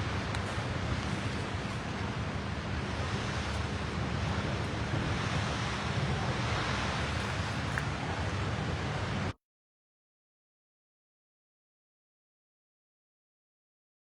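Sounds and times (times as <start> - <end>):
steady rushing noise: 0.0 - 9.4.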